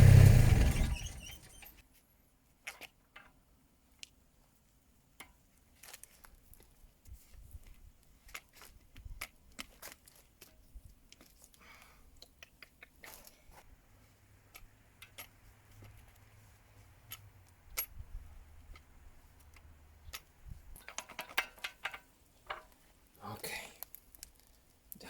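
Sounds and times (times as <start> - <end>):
grease gun metallic clicks: 14.5 - 16.4, 18.6 - 22.8, 23.8 - 25.0.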